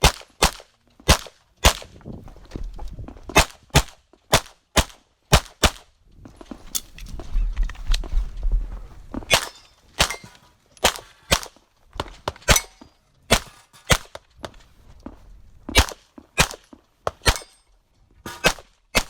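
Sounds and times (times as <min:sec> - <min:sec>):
pistol shots: 0:00.0 - 0:01.9, 0:03.4 - 0:05.9, 0:09.3 - 0:14.2, 0:15.7 - 0:17.6, 0:18.3 - 0:19.0.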